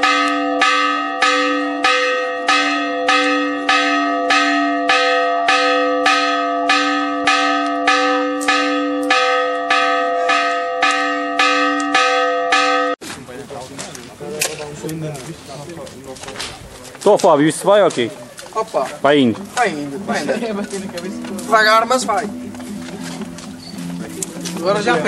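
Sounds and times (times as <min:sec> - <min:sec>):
church bell ringing rapidly: 0:00.0 - 0:13.0, 0:20.0 - 0:25.0.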